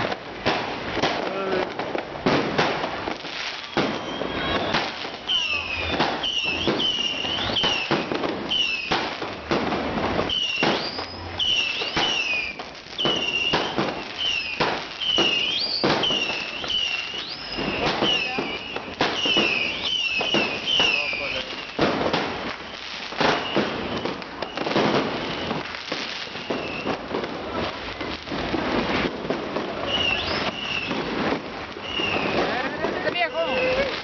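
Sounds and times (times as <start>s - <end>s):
fireworks bangs and crackles: 0.0s - 34.0s
short high whistle: 3.6s - 7.9s, 29.8s - 31.0s, 31.8s - 32.4s.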